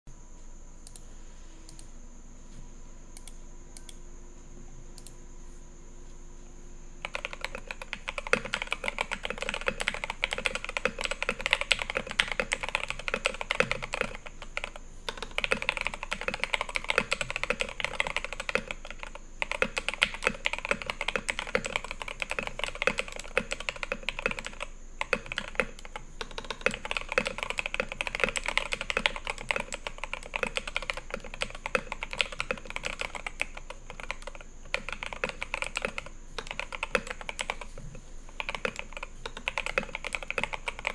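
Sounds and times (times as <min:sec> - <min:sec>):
fast typing on mechanical keyboard: 0:07.0 - 0:40.9.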